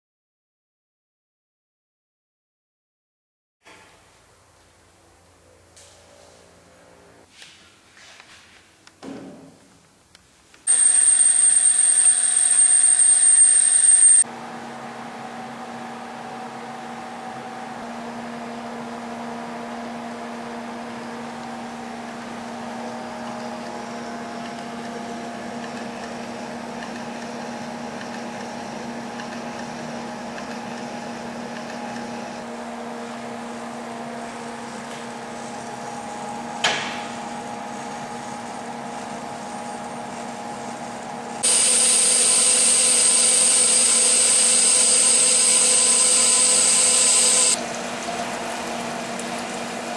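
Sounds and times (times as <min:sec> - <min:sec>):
high-pitched whine: 0:10.7 - 0:14.2, 0:41.4 - 0:47.6
cnc machine running: 0:37.8 - 0:49.5.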